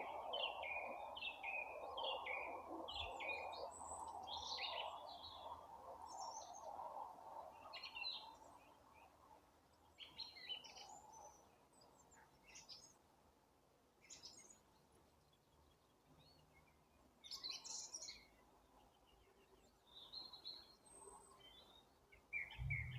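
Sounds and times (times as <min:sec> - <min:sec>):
faint songbirds chirping: 0:00.0 - 0:22.9
soft rushing background noise: 0:22.6 - 0:22.9.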